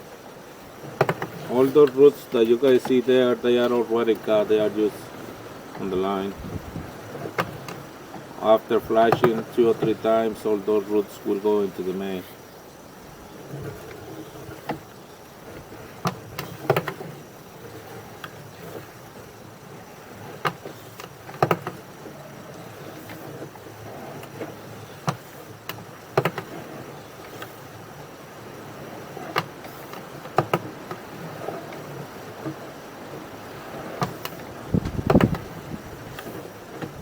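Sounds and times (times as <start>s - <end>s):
low background noise: 0.0s - 37.0s
equipment clicks and knocks: 1.0s - 2.0s, 9.0s - 10.0s, 16.0s - 17.0s, 20.4s - 21.8s, 25.0s - 26.6s, 29.3s - 31.0s, 34.0s - 35.5s.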